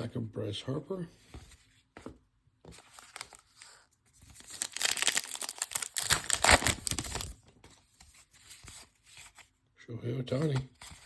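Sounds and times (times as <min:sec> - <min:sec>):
foil wrapper tearing and crinkling: 0:04.4 - 0:07.4.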